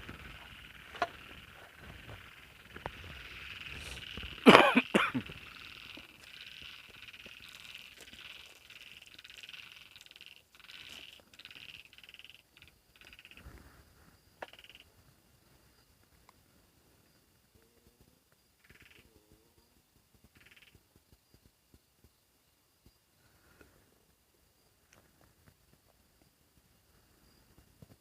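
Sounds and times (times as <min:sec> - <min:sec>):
pulsing frog chorus: 0:00.0 - 0:13.6, 0:14.4 - 0:15.1, 0:18.6 - 0:21.0
frogs croaking close by: 0:00.0 - 0:16.1, 0:17.0 - 0:21.2.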